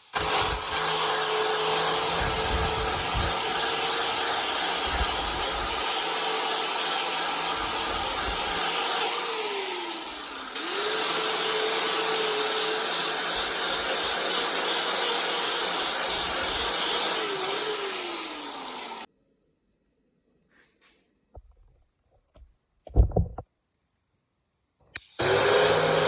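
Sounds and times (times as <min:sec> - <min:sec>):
power tool motor whining: 0:00.0 - 0:19.1, 0:25.2 - 0:26.0.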